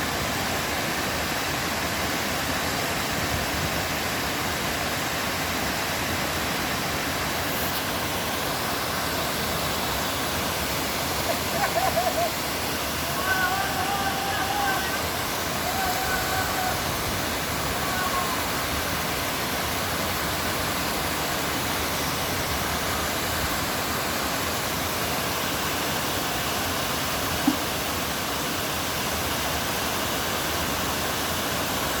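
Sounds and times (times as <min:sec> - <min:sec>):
waterfall rushing: 0:00.0 - 0:32.0.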